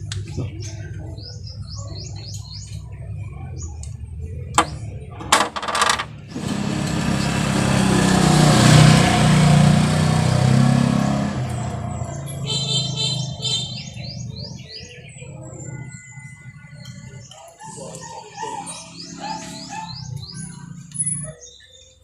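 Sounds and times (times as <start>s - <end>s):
vehicle engine running: 2.2s - 14.8s.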